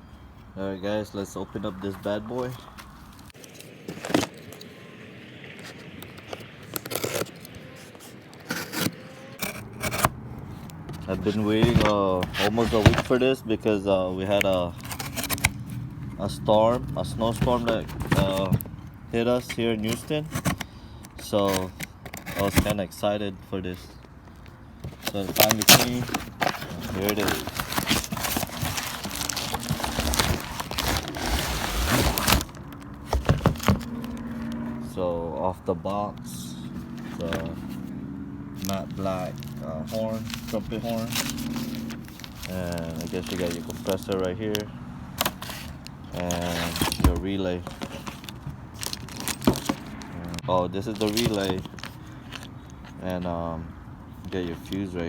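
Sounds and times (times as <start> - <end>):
packaging scraping and tearing: 2.4 - 4.8, 5.5 - 13.4, 14.2 - 22.8, 24.8 - 34.6, 38.6 - 53.0.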